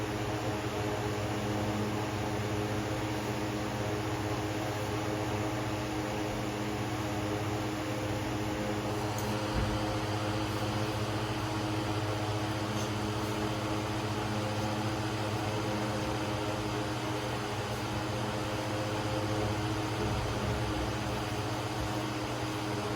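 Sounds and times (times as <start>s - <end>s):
machine hum: 0.0s - 22.9s
soft thump: 9.5s - 9.9s.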